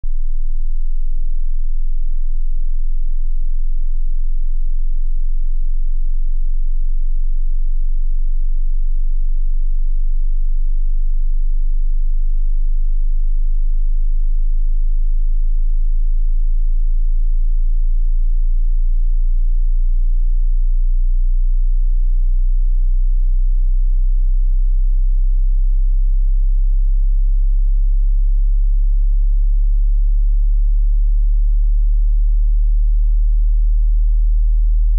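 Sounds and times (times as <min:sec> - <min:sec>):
very low sine tone: 0:00.0 - 0:34.9.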